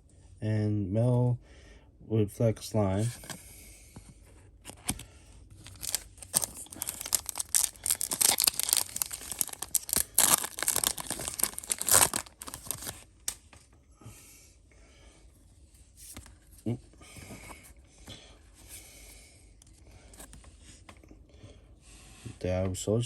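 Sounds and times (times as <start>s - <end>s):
foil wrapper tearing and crinkling: 5.6s - 13.0s.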